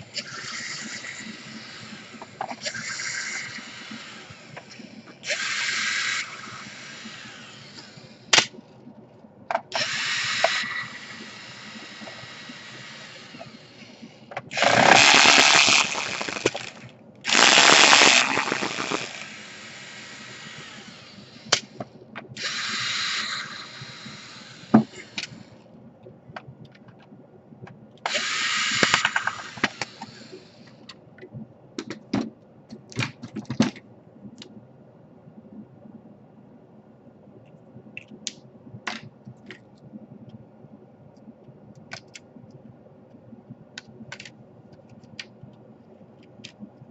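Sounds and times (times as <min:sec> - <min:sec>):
electric screwdriver whirring: 0:01.9 - 0:08.0, 0:09.8 - 0:13.8, 0:14.5 - 0:21.6, 0:22.4 - 0:25.4, 0:28.1 - 0:30.4.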